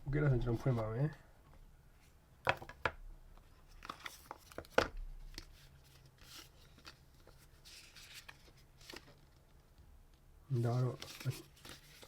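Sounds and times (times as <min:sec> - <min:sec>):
paper rustling and tearing: 0:10.6 - 0:12.0.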